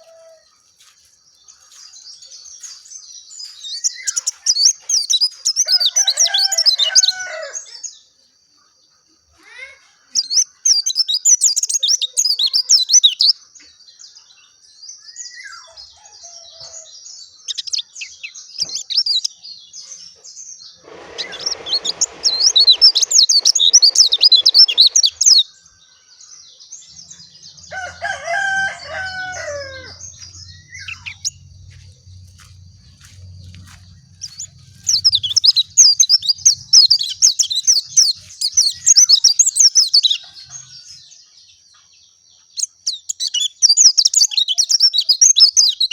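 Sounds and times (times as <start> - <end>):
lower drawn-out bird call: 20.8 - 25.4.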